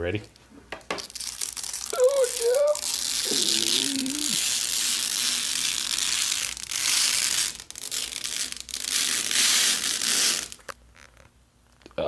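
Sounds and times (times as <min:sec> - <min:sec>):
plastic film peeling: 0:00.8 - 0:11.3.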